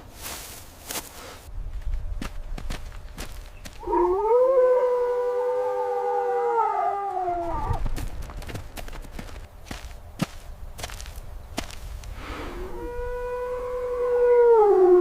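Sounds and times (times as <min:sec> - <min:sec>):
animal howling: 0:03.8 - 0:07.8, 0:12.6 - 0:15.0.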